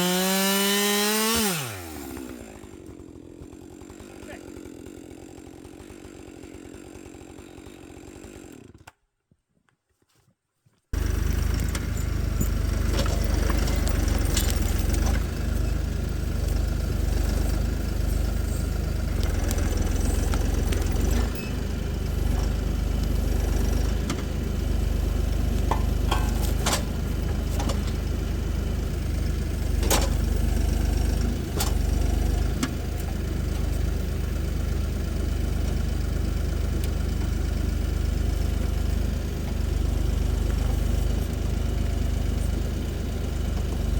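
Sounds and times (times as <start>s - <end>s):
short knocks and clunks: 11.0s - 29.0s
vehicle engine deep rumble: 11.0s - 43.9s.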